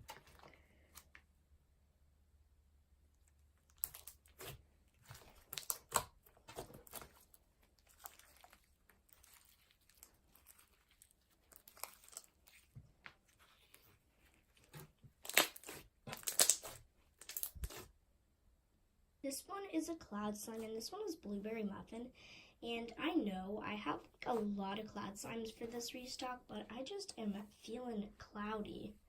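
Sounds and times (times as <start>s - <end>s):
slime squished by hand: 3.6s - 17.9s.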